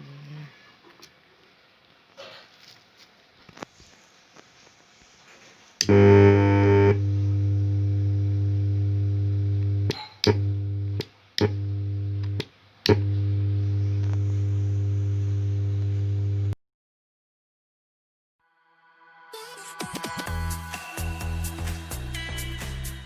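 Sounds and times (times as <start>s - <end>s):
speaker low buzz: 5.8s - 16.6s.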